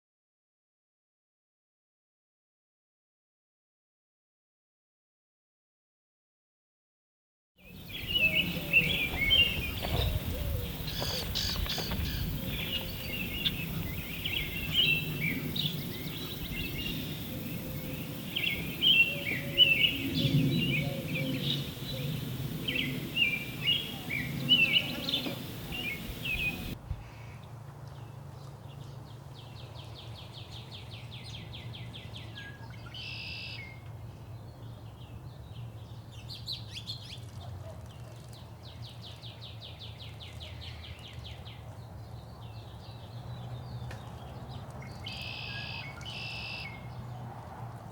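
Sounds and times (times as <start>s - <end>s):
birds chirping and twittering: 7.6s - 37.3s, 38.6s - 47.3s
bird trilling: 7.8s - 26.8s
steady low hum: 7.8s - 26.8s.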